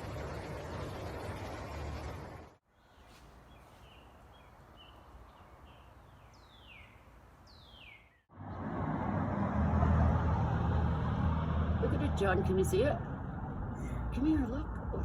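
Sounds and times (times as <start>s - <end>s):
small birds chirping: 2.7s - 8.3s.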